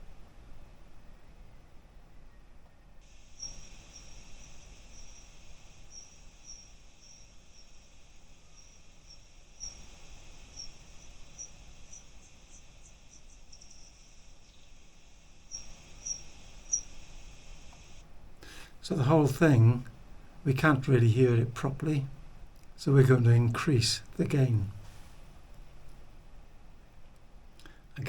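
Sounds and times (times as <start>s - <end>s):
bat echolocation chirps: 3.0s - 19.7s
bat feeding buzz: 3.0s - 19.7s.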